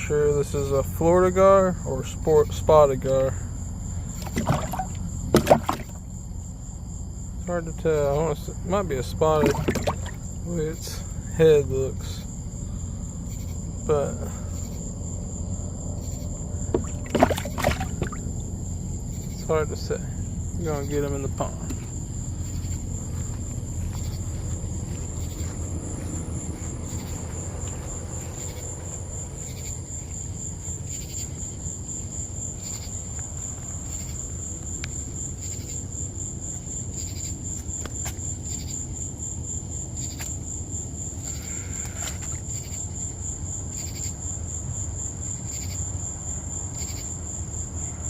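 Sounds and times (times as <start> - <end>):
crickets trilling: 0.0 - 48.0
faint insect chirps: 0.0 - 48.0
low rumble: 10.0 - 30.8.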